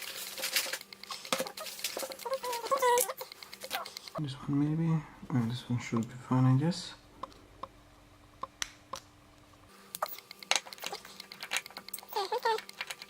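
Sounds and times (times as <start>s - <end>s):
pick scratching lock pins: 0.4s - 4.2s, 10.0s - 13.0s
lock-picking tools clicking: 0.7s - 4.2s, 10.0s - 13.0s.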